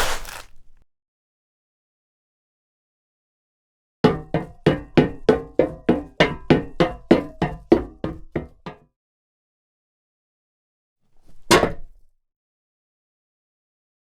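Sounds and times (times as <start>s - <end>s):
boot footsteps running: 0.0s - 0.5s
heavy step landing: 0.0s - 0.5s.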